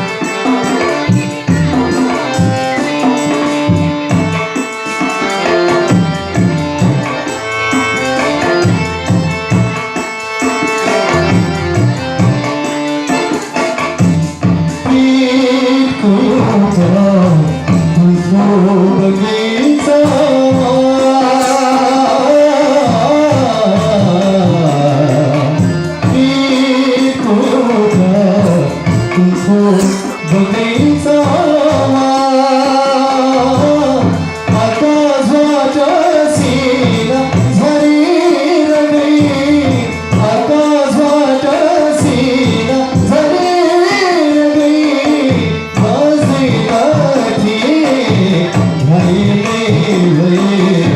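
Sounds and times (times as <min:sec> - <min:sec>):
accompanying instruments: 0:00.0 - 0:50.9
tabla: 0:00.0 - 0:50.9
person singing: 0:14.6 - 0:50.9.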